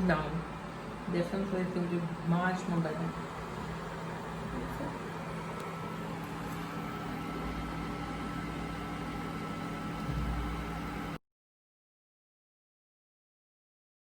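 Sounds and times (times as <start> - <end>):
faint steady whine: 0.0 - 11.2
low mechanical hum: 0.0 - 11.2.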